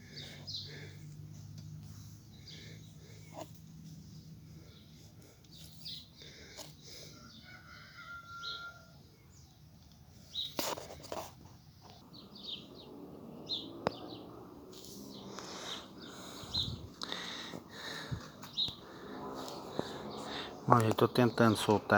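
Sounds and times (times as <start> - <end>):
birds chirping: 0.0 - 10.6, 11.5 - 21.9.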